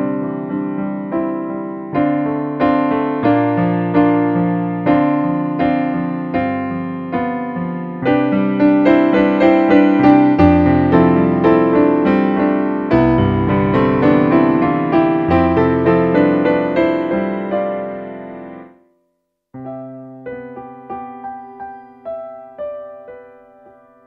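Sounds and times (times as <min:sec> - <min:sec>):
piano-like keyboard melody: 0:00.0 - 0:19.0, 0:19.6 - 0:24.0.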